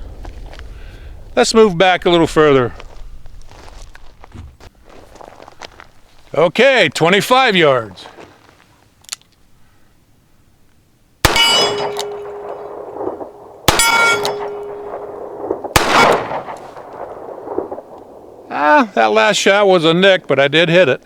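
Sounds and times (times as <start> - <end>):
steel plate ringing: 11.3 - 13.0, 13.7 - 15.2
revolver shots: 11.3 - 17.9.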